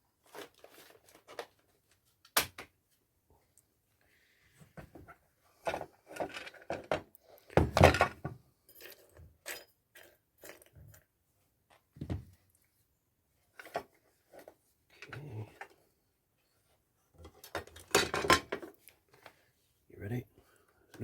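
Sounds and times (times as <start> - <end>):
tool and parts clattering on surface: 5.6 - 11.0, 17.2 - 18.8.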